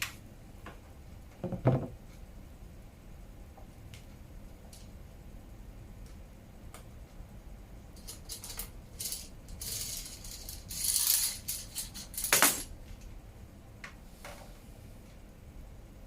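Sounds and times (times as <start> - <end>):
small metal parts clinking: 8.0 - 12.7.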